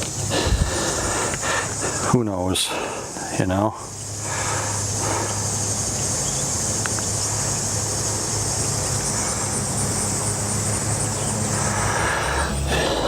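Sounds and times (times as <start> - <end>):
insect chorus buzzing: 0.0 - 13.0.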